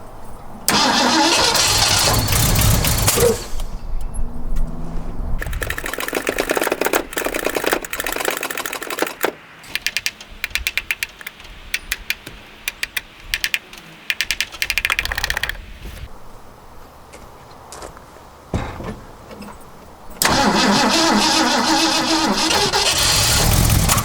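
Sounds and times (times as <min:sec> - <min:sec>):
rapid mechanical clicking: 0:00.7 - 0:03.7, 0:05.4 - 0:15.7, 0:20.2 - 0:24.0.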